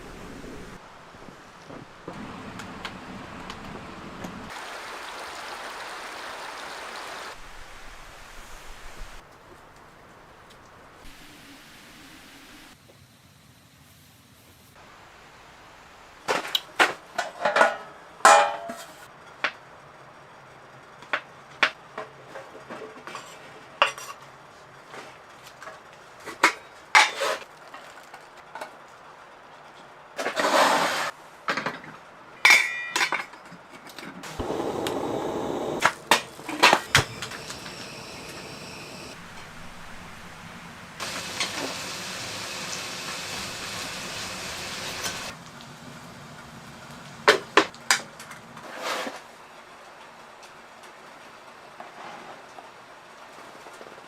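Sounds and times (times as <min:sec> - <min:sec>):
steady hiss: 0:04.5 - 0:09.3, 0:34.2 - 0:47.6
metal cookware clinking: 0:17.2 - 0:19.0, 0:32.5 - 0:33.4.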